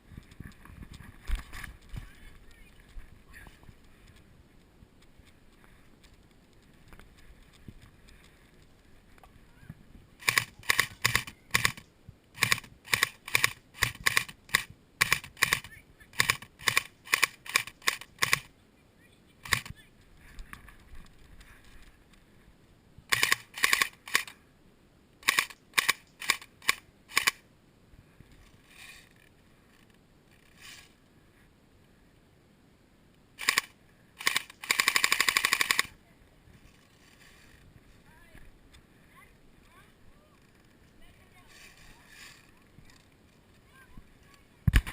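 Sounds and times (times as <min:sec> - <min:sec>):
airsoft guns firing: 0:10.2 - 0:11.8, 0:33.4 - 0:35.9.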